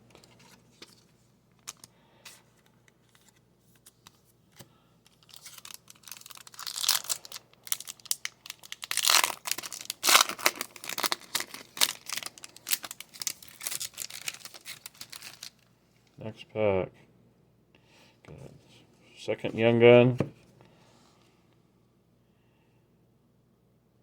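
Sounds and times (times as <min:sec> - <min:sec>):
wrapper tearing and crinkling: 0:05.1 - 0:15.7.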